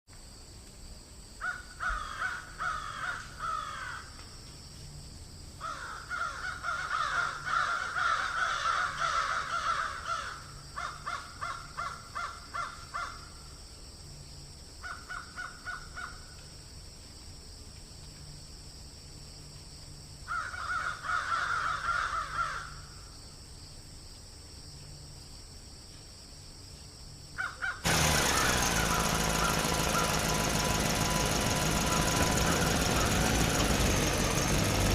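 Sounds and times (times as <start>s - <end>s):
crows cawing: 1.4s - 4.1s, 5.6s - 13.3s, 20.3s - 22.9s, 27.4s - 30.3s
small engine running: 27.8s - 34.9s.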